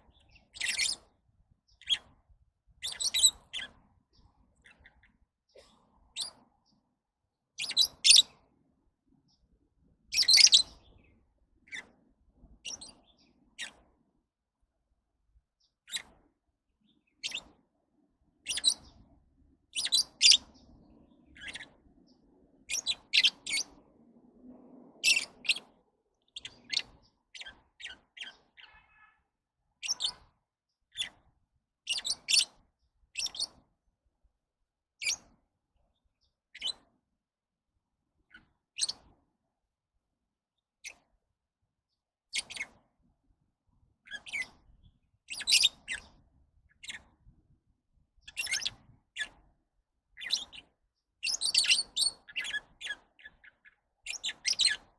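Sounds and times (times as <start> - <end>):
lovebirds chirping: 0.0 - 5.2, 7.6 - 8.4, 10.1 - 12.0, 12.6 - 13.9, 15.6 - 16.2, 18.4 - 19.1, 19.7 - 23.8, 25.0 - 29.2, 29.8 - 31.3, 31.9 - 32.6, 33.2 - 33.6, 45.3 - 47.1, 48.2 - 49.5, 50.1 - 54.9.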